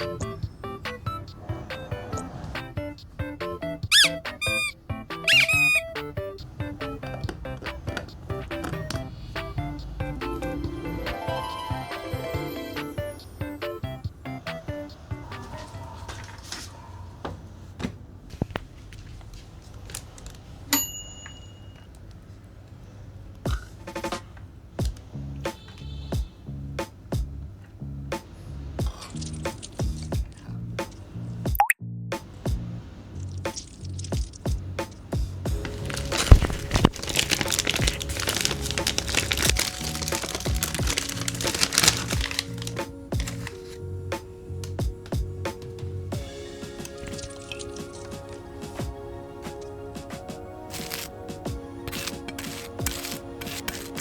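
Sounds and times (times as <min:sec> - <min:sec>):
soft background music: 0:00.0 - 0:16.2, 0:32.5 - 0:54.0
sharp metallic ding: 0:20.8 - 0:21.8
small hard objects clicking: 0:35.5 - 0:43.7, 0:50.7 - 0:51.1, 0:51.9 - 0:54.0
packaging crinkling: 0:35.5 - 0:43.8, 0:46.8 - 0:48.8, 0:50.7 - 0:51.2, 0:51.9 - 0:54.0.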